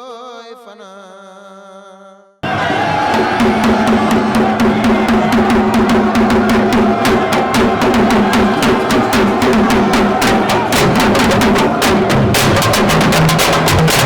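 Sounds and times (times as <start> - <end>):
fast drum-driven music: 2.4 - 14.0.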